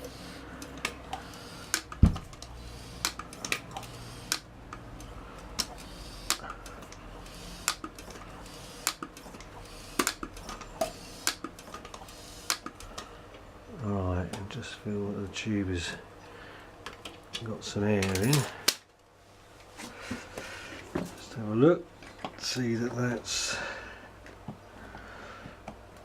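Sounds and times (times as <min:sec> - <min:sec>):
heavy thump: 0:02.0 - 0:02.2.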